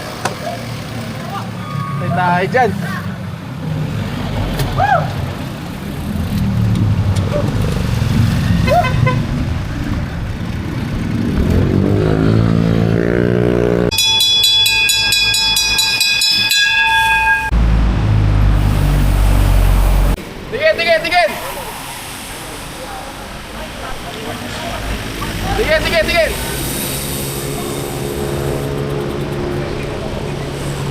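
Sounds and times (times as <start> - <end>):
vehicle engine speeding up: 5.2 - 14.0, 17.5 - 20.2, 24.7 - 30.9.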